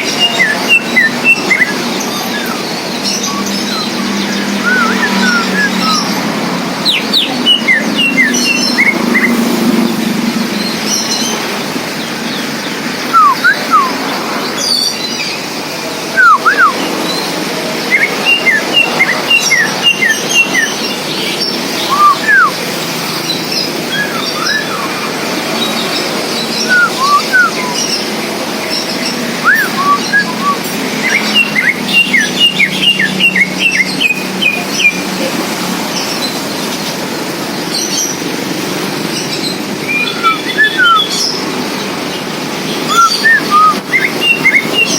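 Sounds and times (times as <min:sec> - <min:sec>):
bird singing clear whistles: 0:00.0 - 0:06.2, 0:06.8 - 0:09.5, 0:13.0 - 0:15.0, 0:16.1 - 0:16.9, 0:17.9 - 0:22.6, 0:23.6 - 0:25.8, 0:26.4 - 0:28.1, 0:28.7 - 0:35.0, 0:39.4 - 0:41.4, 0:42.8 - 0:44.9.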